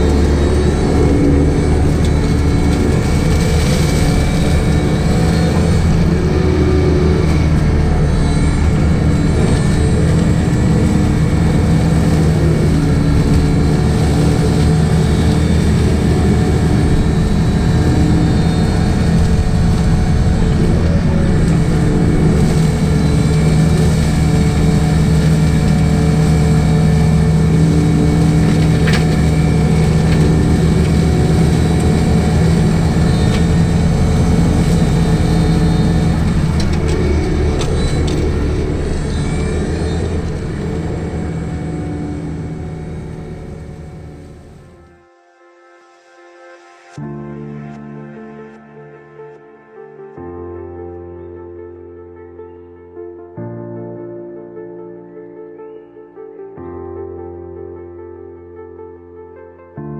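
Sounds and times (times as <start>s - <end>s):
flail mulcher shredding grass: 0.0s - 44.8s
diesel engine running at high revs: 0.0s - 44.9s.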